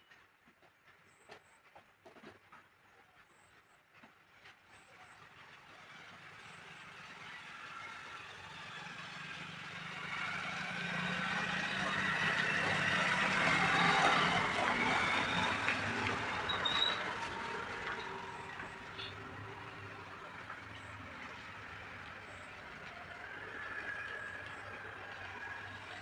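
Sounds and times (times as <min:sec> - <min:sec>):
heavy vehicle driving past: 0:06.4 - 0:26.0.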